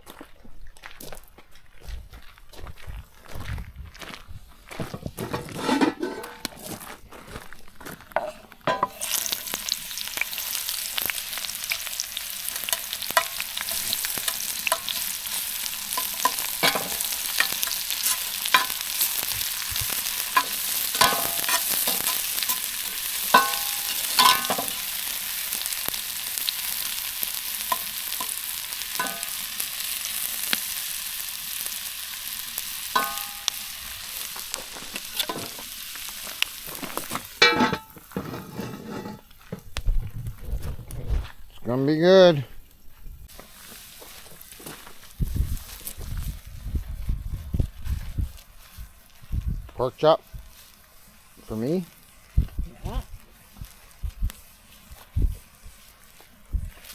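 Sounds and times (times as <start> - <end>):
metal utensil clinking on pan: 5.4 - 6.6, 8.2 - 9.6, 12.5 - 25.0, 29.0 - 29.5, 32.9 - 33.8, 35.2 - 35.6, 37.4 - 39.2
meat sizzling in a pan: 8.6 - 40.0, 41.8 - 56.9.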